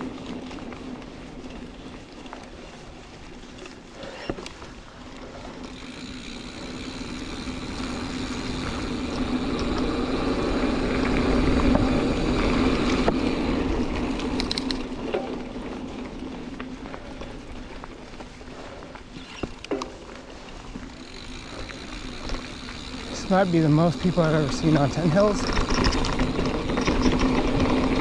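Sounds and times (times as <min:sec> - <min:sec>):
bike tyres on dirt trail: 0:00.0 - 0:28.0
freewheel hub buzz: 0:05.2 - 0:15.4, 0:18.6 - 0:28.0.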